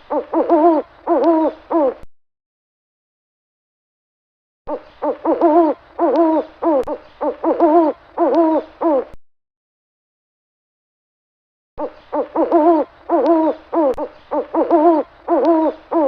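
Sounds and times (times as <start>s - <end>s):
owl hooting: 0.1s - 2.0s, 4.7s - 9.2s, 11.8s - 16.0s.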